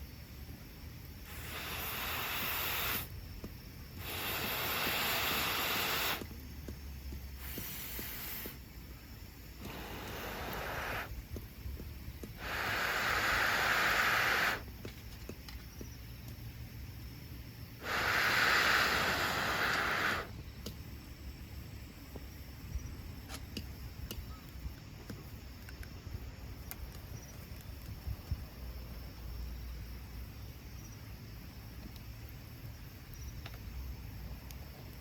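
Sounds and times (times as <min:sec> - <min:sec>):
steady hissing bursts: 0:00.0 - 0:24.0
faint ticks: 0:09.5 - 0:13.3, 0:26.6 - 0:28.3, 0:34.4 - 0:35.0.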